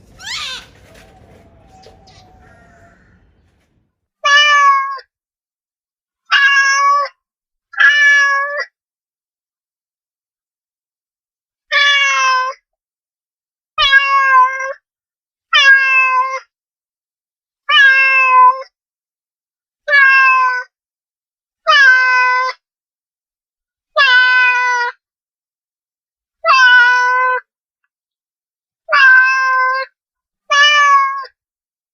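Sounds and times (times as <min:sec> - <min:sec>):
cat meowing: 0:00.0 - 0:03.4, 0:06.3 - 0:07.1, 0:15.6 - 0:16.4, 0:17.7 - 0:18.6, 0:19.9 - 0:20.6, 0:26.4 - 0:27.4, 0:28.9 - 0:29.9, 0:30.5 - 0:31.3.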